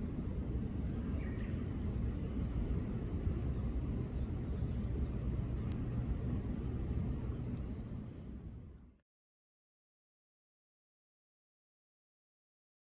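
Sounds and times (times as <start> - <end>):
low outdoor rumble: 0.0 - 9.0.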